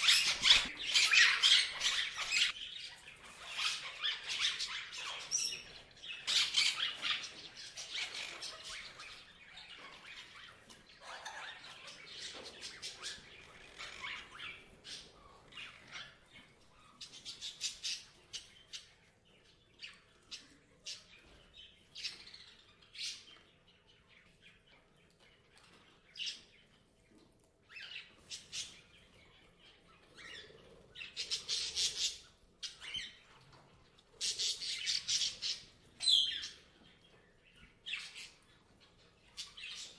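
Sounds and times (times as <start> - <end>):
parrots chirping and squawking: 0.0 - 18.6, 30.2 - 33.5.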